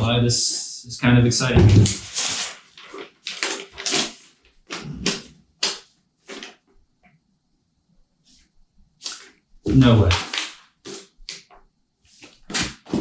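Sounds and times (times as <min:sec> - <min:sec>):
packaging scraping and rustling: 0:01.7 - 0:06.6, 0:10.0 - 0:11.4, 0:12.2 - 0:13.0.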